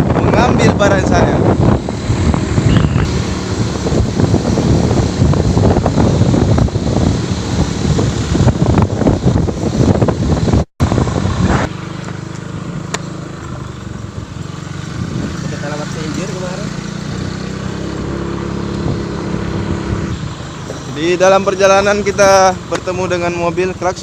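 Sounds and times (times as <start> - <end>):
wind buffeting microphone: 0.0 - 12.8, 13.4 - 22.6
vehicle engine running: 0.0 - 24.0.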